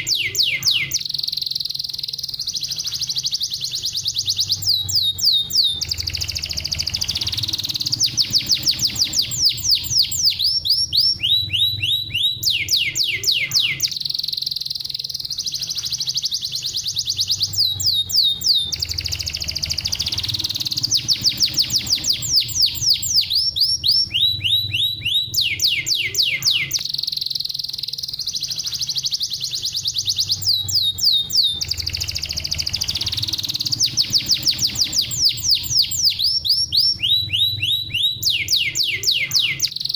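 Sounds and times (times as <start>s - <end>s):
canary singing: 0.0s - 39.9s
low hum: 4.0s - 13.9s, 15.0s - 26.9s, 29.5s - 38.5s.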